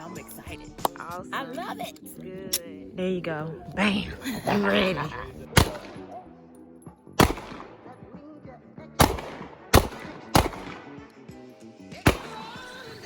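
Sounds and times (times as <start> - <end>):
quiet background music: 0.0 - 13.0
handgun shots: 5.5 - 6.2, 7.2 - 8.0, 9.0 - 11.2, 12.0 - 12.6.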